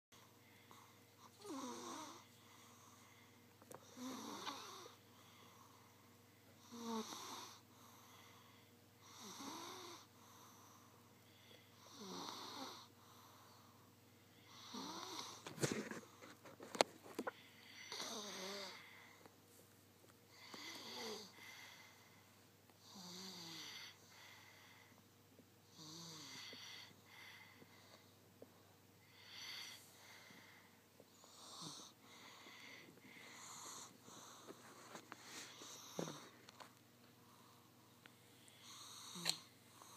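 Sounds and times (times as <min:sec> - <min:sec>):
wheezy snoring: 0:00.6 - 0:03.2, 0:03.8 - 0:05.8, 0:06.6 - 0:13.7, 0:14.4 - 0:15.5, 0:17.3 - 0:19.2, 0:20.3 - 0:22.2, 0:22.8 - 0:25.0, 0:25.7 - 0:27.6, 0:29.0 - 0:34.6, 0:35.2 - 0:36.4, 0:38.4 - 0:39.9
snort with sharp clicks: 0:39.0 - 0:39.5.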